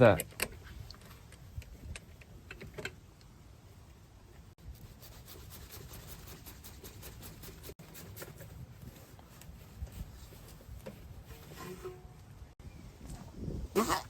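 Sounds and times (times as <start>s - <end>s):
faint rubbing and scraping: 4.6s - 12.4s.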